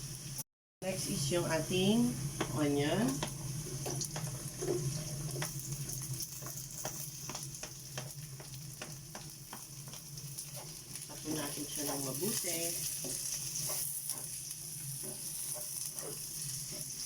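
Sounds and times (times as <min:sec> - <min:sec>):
garlic and onion sizzling in oil: 0:00.0 - 0:17.0
spatula clicking against pan: 0:06.4 - 0:11.1.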